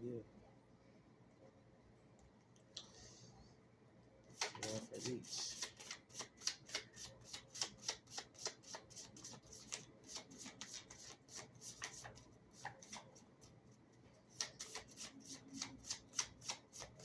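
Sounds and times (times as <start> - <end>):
cards being shuffled: 4.3 - 13.2, 14.3 - 17.0.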